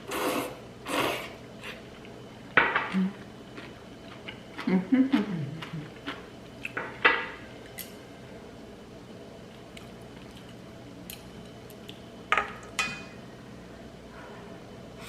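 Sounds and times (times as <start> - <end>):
dishes and utensils clinking: 12.3 - 13.2.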